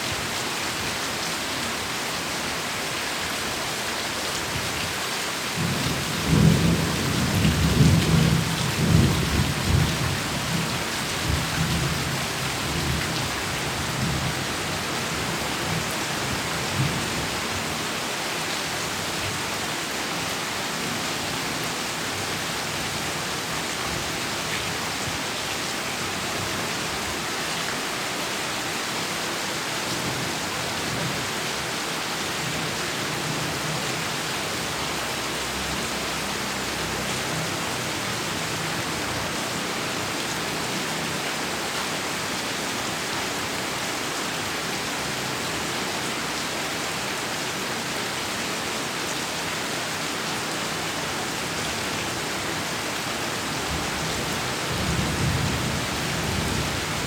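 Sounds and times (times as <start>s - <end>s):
heavy rain falling: 0.0s - 57.0s
low rumble of thunder: 5.6s - 13.0s.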